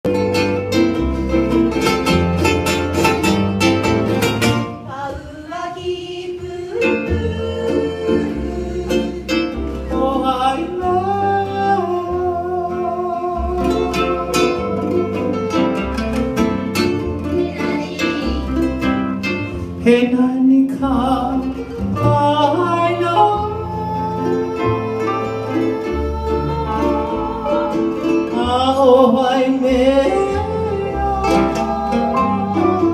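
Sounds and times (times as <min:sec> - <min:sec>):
plucked strings: 0:00.0 - 0:32.9
bass line: 0:06.5 - 0:32.9.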